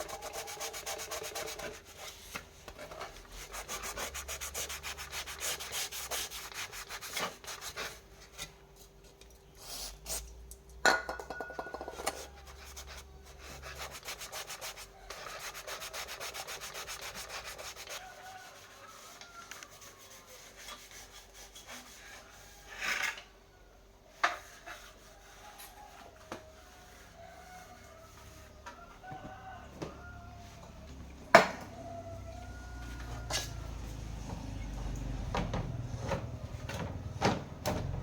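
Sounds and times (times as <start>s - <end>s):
scraping strokes on hard surface: 11.9s - 23.2s, 24.2s - 28.6s.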